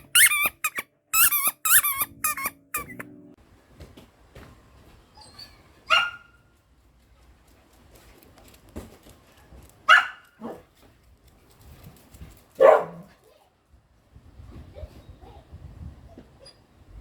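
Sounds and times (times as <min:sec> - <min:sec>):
dog barking: 0:05.9 - 0:06.4, 0:09.9 - 0:10.7, 0:12.6 - 0:13.2.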